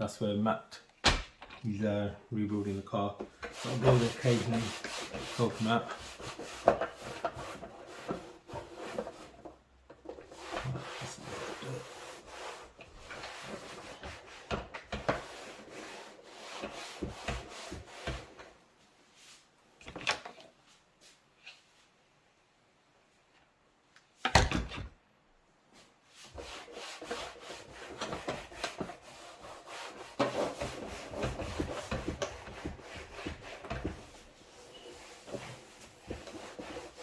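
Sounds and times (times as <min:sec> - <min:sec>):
cloth scrubbing a panel: 0:02.5 - 0:18.5, 0:25.8 - 0:37.0.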